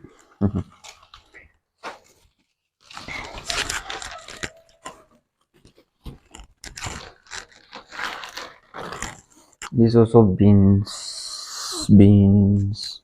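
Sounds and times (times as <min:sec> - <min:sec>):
bags crinkling and rustling: 0:00.0 - 0:09.6.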